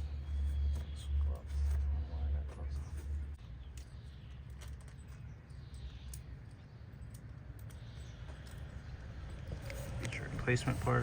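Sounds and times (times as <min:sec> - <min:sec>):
light clicks of small parts: 0:03.6 - 0:10.2.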